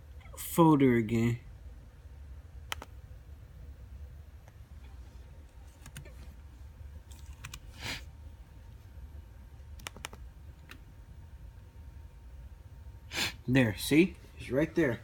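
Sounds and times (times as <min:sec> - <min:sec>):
low steady hum: 0:00.0 - 0:15.0
computer mouse clicks: 0:02.7 - 0:02.9, 0:05.8 - 0:06.1, 0:07.1 - 0:07.6, 0:09.8 - 0:10.8.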